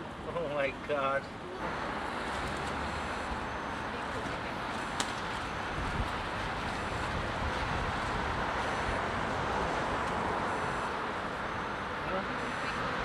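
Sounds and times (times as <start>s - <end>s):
road traffic noise: 0.0s - 13.0s
faint high beep: 2.9s - 6.1s.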